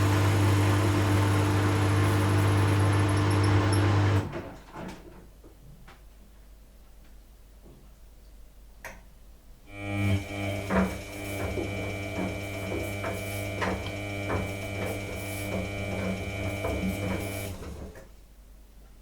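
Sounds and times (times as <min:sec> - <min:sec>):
washing machine humming: 0:00.0 - 0:04.6, 0:09.7 - 0:18.2.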